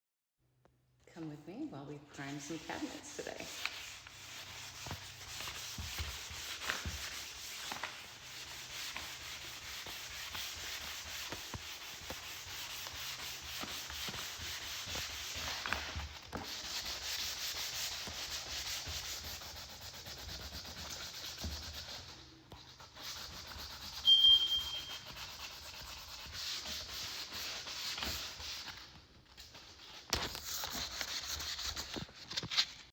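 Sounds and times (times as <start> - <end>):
sanding wooden cabinets: 2.3 - 28.9, 30.4 - 32.0
high-pitched beep: 24.0 - 25.0.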